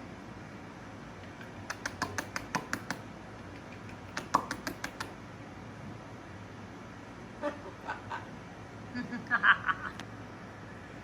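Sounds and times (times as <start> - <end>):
dehumidifier running: 0.0 - 11.0
sharp clicks: 1.4 - 5.2.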